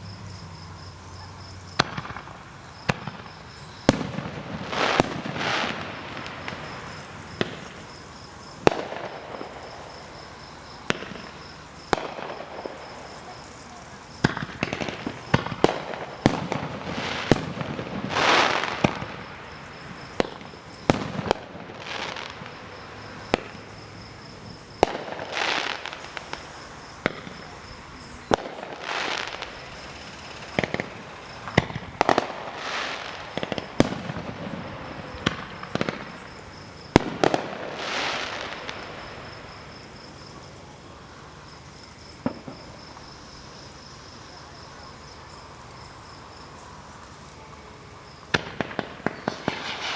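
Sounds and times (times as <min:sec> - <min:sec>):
crickets chirping: 0:00.0 - 0:49.9
fireworks bangs and crackling: 0:00.0 - 0:49.9.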